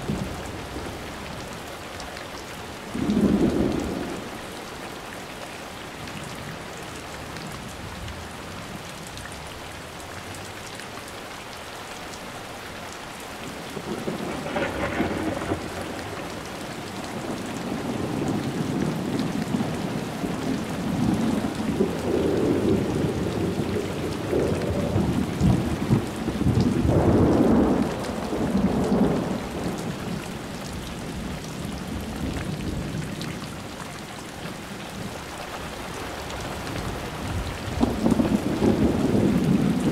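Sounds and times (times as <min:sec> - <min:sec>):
steady rain: 0:00.0 - 0:39.9
rolling rumble of thunder: 0:02.9 - 0:04.3, 0:13.8 - 0:30.4, 0:36.2 - 0:39.9
thunderclap: 0:13.8 - 0:16.4.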